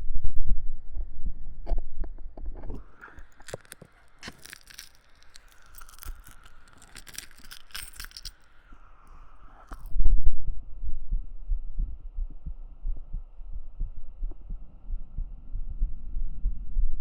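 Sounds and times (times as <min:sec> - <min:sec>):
scratchy crackling on microphone: 0:02.4 - 0:08.6.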